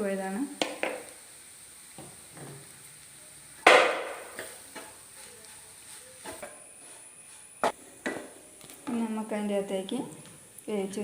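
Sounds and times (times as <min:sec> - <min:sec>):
spoon stirring in a frying pan: 0:00.5 - 0:09.1.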